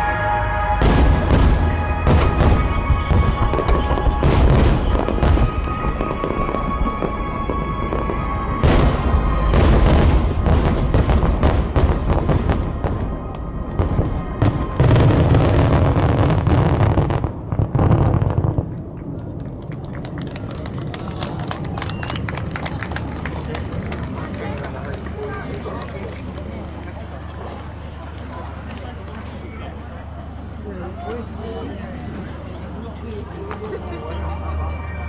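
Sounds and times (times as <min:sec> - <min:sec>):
show music: 0:00.0 - 0:17.2, 0:33.7 - 0:35.0
firework shells booming: 0:00.8 - 0:19.4
firework crackle: 0:00.8 - 0:30.0.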